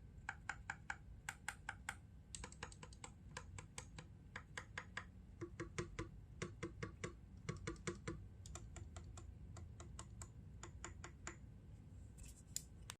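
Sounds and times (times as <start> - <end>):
mechanical keyboard typing: 0.3 - 5.1.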